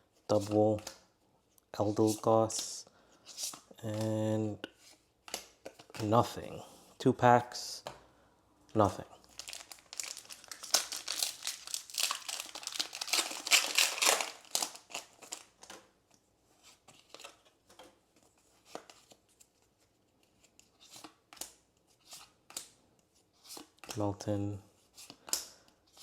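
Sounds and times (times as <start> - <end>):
foil wrapper crinkling and tearing: 9.2 - 15.6.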